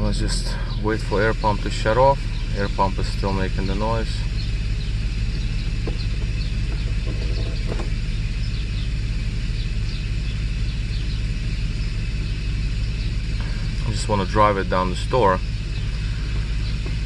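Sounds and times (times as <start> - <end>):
car engine idling: 0.0 - 17.0
air pump running: 0.4 - 17.0.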